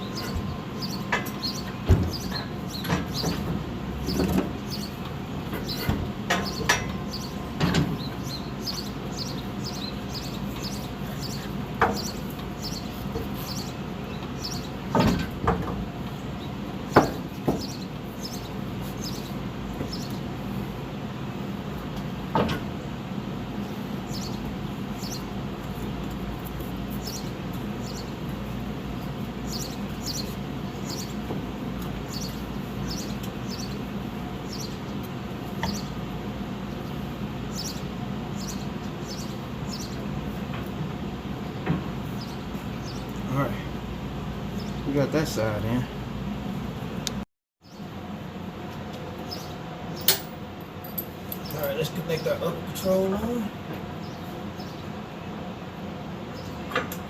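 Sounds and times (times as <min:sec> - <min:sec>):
metal clanks and knocks: 0:05.5 - 0:08.1, 0:14.9 - 0:15.8.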